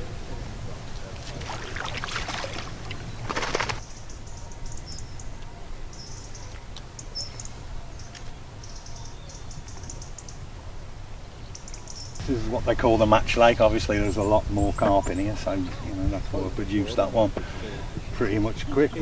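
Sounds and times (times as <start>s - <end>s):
low rumble of wind: 0.0s - 19.0s
small birds chirping: 0.0s - 19.0s
brief rustling: 0.9s - 3.9s.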